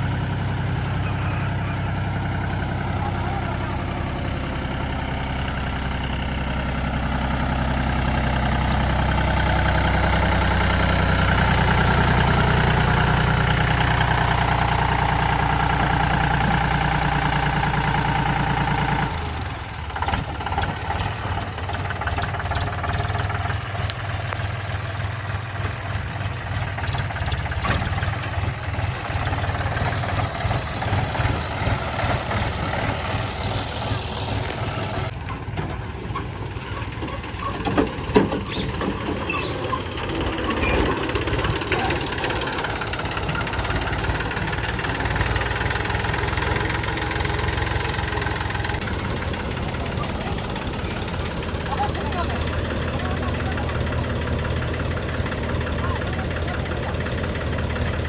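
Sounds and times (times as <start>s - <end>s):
heavy diesel engines running: 0.0s - 58.0s.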